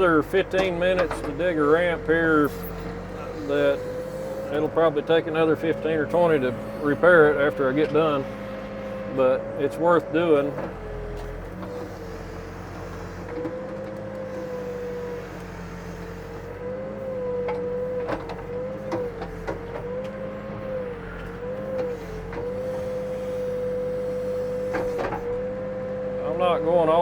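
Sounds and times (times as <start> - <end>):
diesel engine rumbling: 0.0 - 27.0
hydraulic whine: 0.0 - 27.0.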